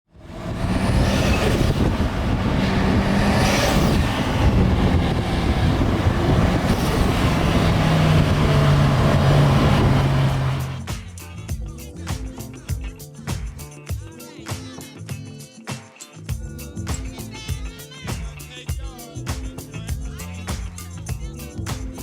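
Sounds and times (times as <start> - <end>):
car engine drone: 0.0 - 10.9
rising turbo whooshes: 0.1 - 10.9
road and wind noise: 0.1 - 10.9.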